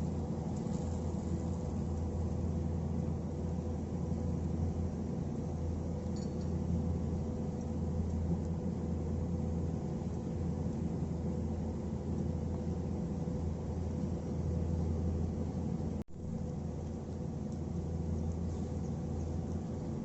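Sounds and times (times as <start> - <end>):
low hum with faint tone: 0.0 - 20.0.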